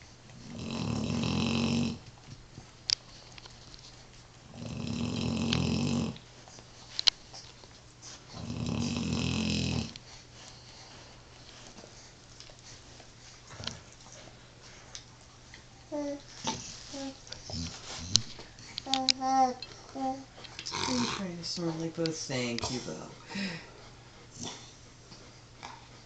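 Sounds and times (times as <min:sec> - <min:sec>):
dog snoring: 0:00.0 - 0:02.1, 0:04.5 - 0:06.3, 0:08.3 - 0:10.1, 0:15.9 - 0:23.7, 0:24.3 - 0:26.0.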